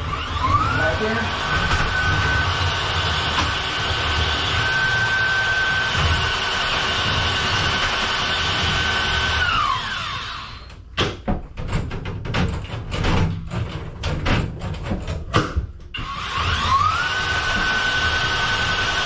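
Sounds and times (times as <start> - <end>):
drain auger motor whine: 0.0 - 10.7, 16.0 - 19.0
knocking and clattering: 10.9 - 15.9.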